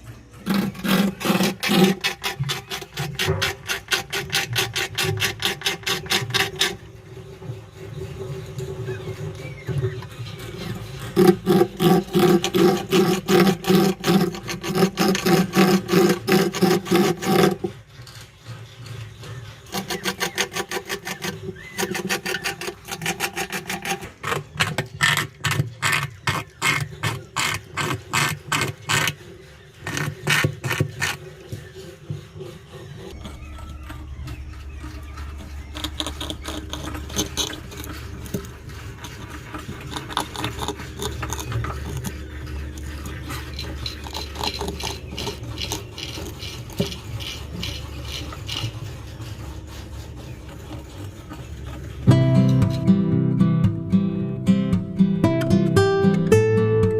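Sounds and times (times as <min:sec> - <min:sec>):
rats gnawing: 0:00.0 - 0:07.0, 0:07.8 - 0:52.8
low hum: 0:33.0 - 0:56.9.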